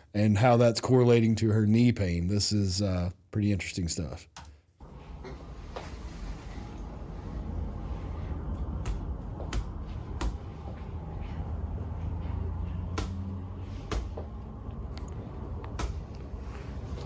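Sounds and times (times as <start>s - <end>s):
steady low hum: 4.8s - 17.0s
sharp knocks: 12.9s - 14.3s.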